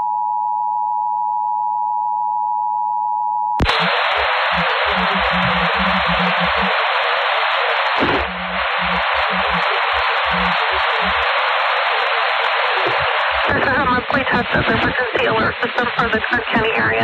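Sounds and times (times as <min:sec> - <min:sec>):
radio static hiss: 0:03.6 - 0:17.0.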